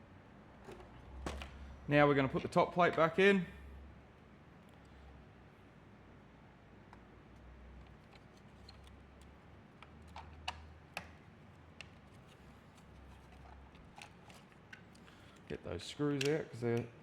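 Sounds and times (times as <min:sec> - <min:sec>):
plastic parts clicking and tapping: 0:07.8 - 0:15.5.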